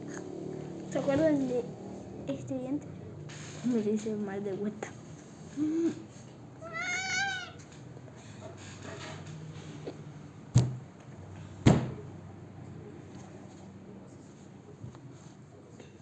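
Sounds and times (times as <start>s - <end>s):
cat meowing: 6.6s - 7.7s.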